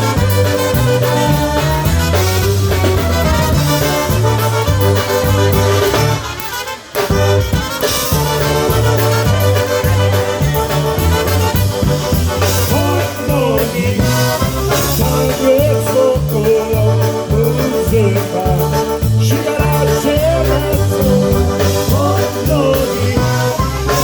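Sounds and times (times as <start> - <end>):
polka band playing: 0.0 - 24.0.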